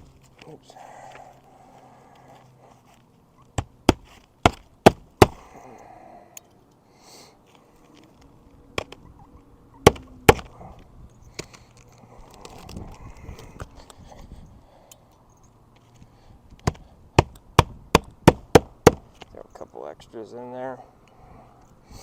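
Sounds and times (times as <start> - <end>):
hammer driving roofing nails: 3.6 - 5.5, 9.8 - 10.6, 16.6 - 19.1.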